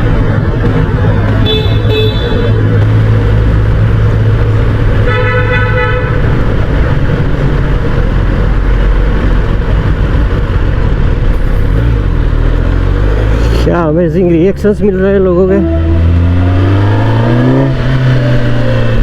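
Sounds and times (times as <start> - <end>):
vehicle horn beeps: 1.4 - 2.5
motorcycle engine droning: 10.9 - 19.0.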